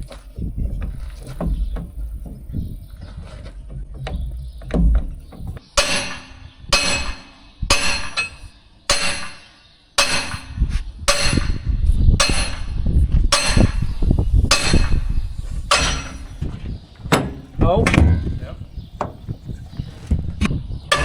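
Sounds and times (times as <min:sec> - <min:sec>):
sledgehammer striking steel bolt: 0:03.9 - 0:11.6.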